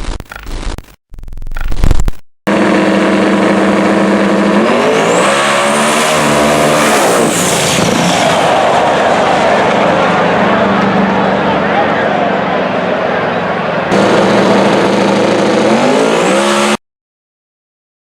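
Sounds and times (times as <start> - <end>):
misfiring car engine revving: 2.5 - 13.1, 13.9 - 16.8.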